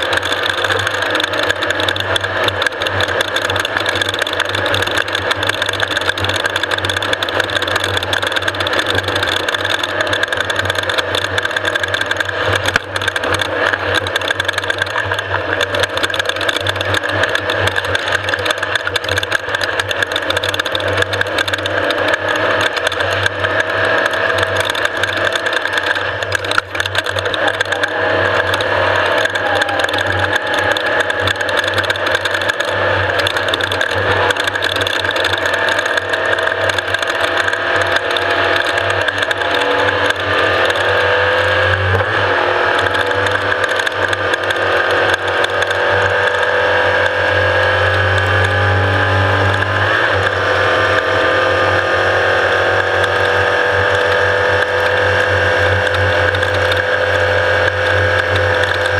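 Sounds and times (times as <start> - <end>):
mechanical rattle: 0.0 - 58.9
race vehicle engine: 0.0 - 58.9
steady high whine: 0.0 - 58.9.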